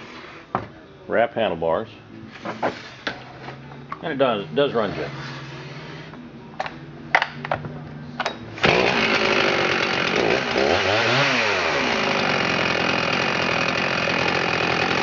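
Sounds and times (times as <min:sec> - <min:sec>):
man speaking: 0:04.0 - 0:05.2
chainsaw idling and revving: 0:08.6 - 0:15.0.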